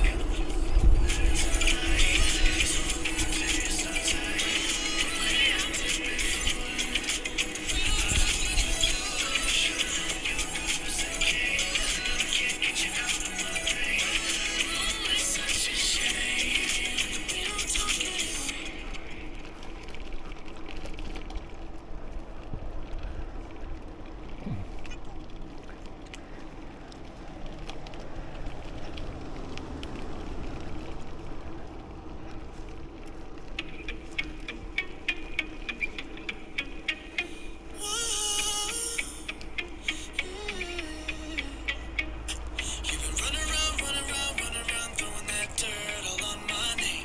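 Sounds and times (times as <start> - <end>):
wind on microphone: 0.0 - 19.8
bicycle tyre and road noise: 0.0 - 47.0.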